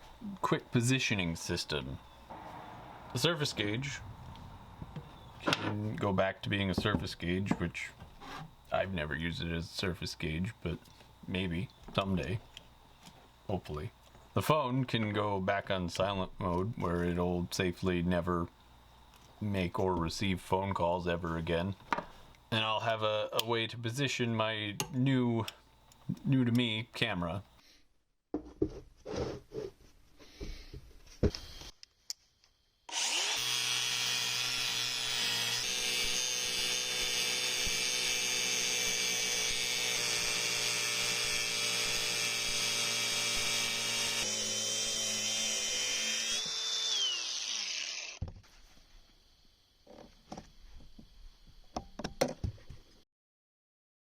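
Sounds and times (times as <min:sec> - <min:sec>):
power tool motor running: 0:32.9 - 0:48.2.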